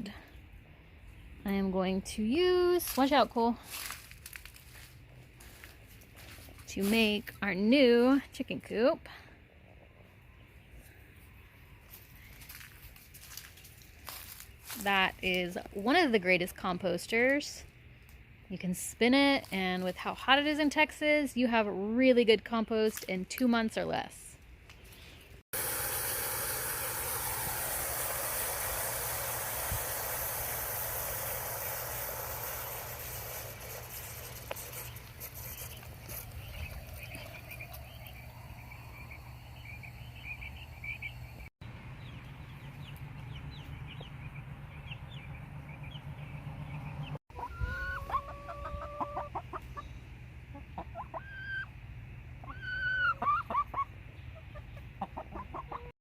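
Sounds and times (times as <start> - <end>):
loud even hiss: 25.5 - 35.0
hens clucking: 47.3 - 49.9, 50.5 - 51.7, 52.4 - 55.9.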